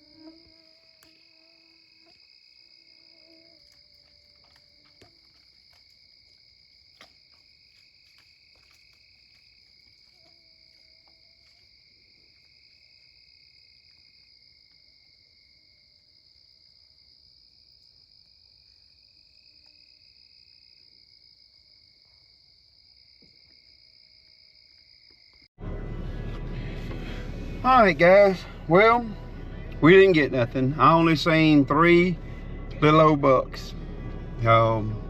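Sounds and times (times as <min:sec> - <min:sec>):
lower insect trill: 0:00.0 - 0:25.5.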